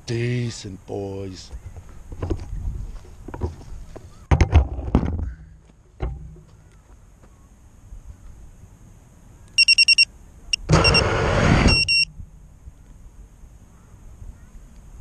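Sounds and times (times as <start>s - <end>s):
quadcopter beeping: 9.6s - 12.1s
drone motors spinning up: 10.7s - 12.0s.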